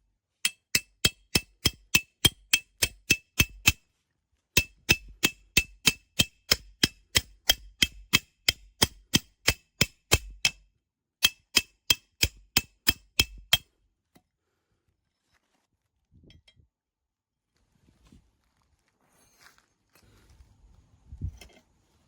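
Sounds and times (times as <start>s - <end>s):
hammer striking metal tent peg: 0.4s - 3.8s, 4.6s - 10.6s, 11.2s - 13.7s.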